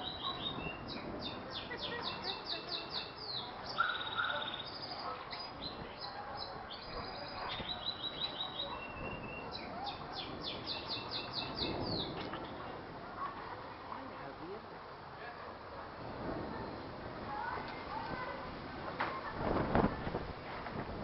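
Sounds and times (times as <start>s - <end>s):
small birds chirping: 0.0s - 12.9s.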